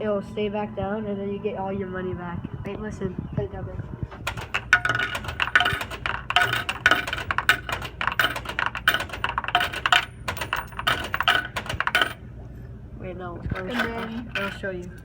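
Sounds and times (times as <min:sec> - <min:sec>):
coins clinking into coin return: 0:04.1 - 0:12.3, 0:13.5 - 0:15.0.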